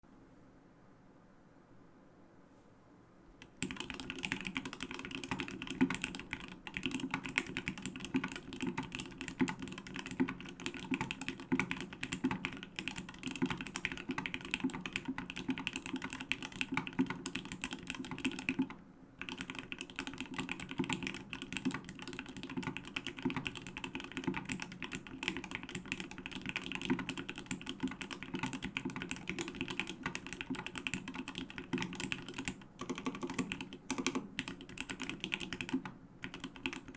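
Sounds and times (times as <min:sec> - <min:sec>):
fast mechanical keyboard typing: 0:03.4 - 0:36.9.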